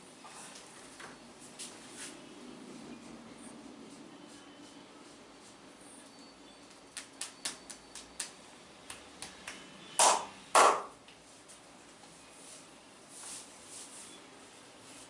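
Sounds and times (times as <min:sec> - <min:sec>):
loud hand slaps: 0:07.0 - 0:10.9.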